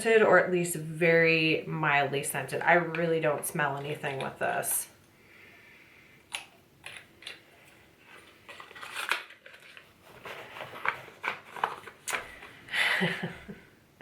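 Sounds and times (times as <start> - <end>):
packaging clicks and rustles: 6.3 - 12.7.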